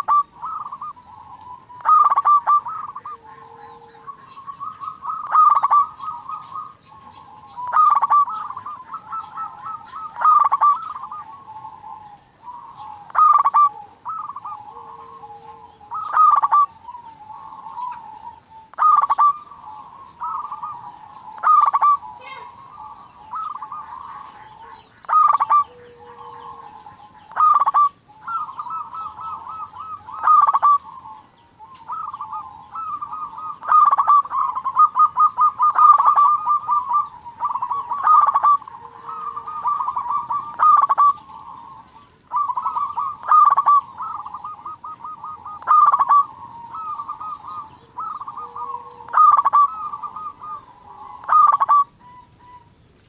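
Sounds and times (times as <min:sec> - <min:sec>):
doves cooing: 0:00.0 - 0:53.0.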